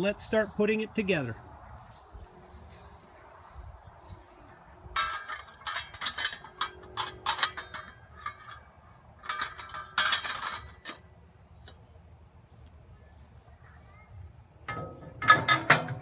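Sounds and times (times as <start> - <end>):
heavy steel parts clanking: 4.8 - 11.1, 14.7 - 16.0.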